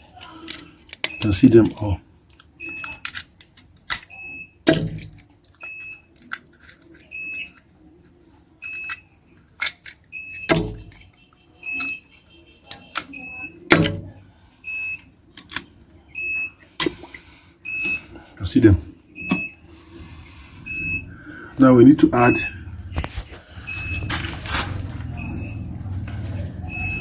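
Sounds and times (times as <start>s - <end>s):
short high electronic beeps: 26.6s - 27.0s.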